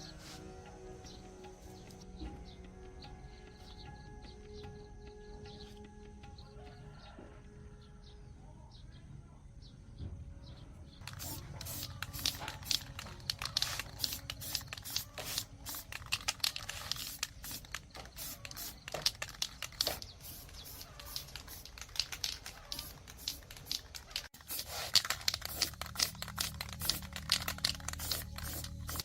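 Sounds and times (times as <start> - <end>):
scraping and clicking: 11.0 - 29.0.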